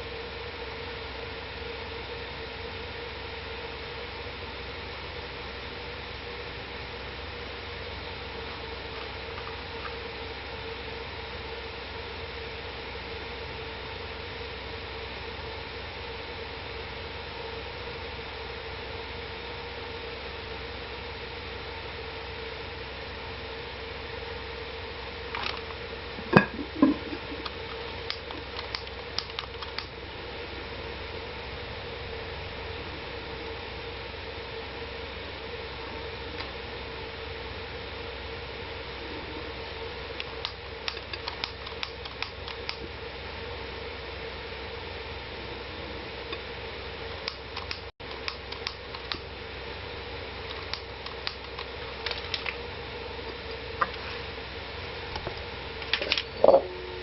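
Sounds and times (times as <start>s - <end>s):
steady hum: 0.0s - 57.0s.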